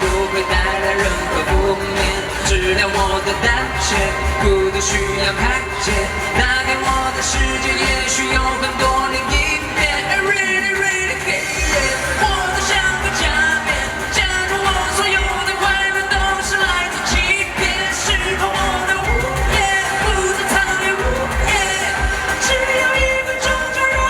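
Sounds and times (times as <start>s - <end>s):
heavy beat: 0.0s - 24.0s
person singing: 0.0s - 24.0s.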